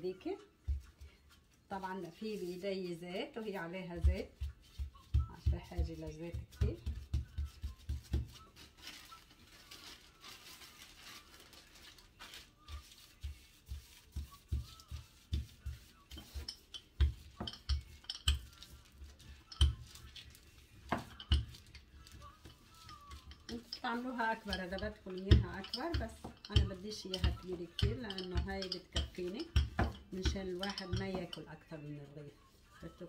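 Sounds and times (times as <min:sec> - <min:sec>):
hands patting dough: 0:00.6 - 0:01.4, 0:03.6 - 0:09.1, 0:12.2 - 0:31.6.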